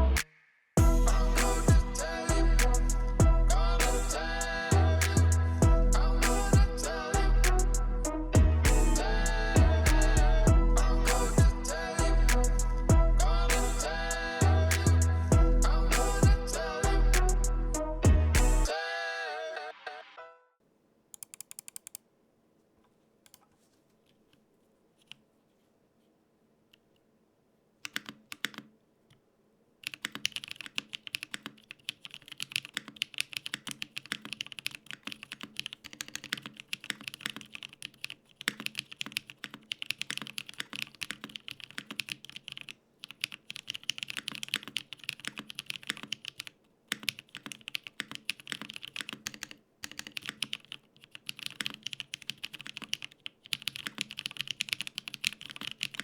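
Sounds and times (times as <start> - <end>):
mechanical keyboard typing: 21.1 - 22.0, 27.8 - 28.7, 29.8 - 56.0.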